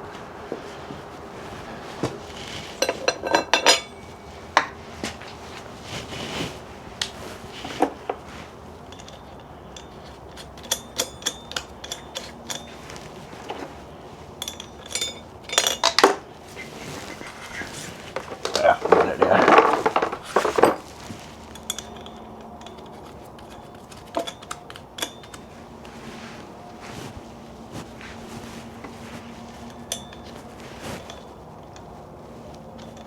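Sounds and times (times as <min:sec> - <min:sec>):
metal tools clinking and clattering: 0:02.4 - 0:05.4, 0:07.6 - 0:25.9, 0:29.6 - 0:33.0.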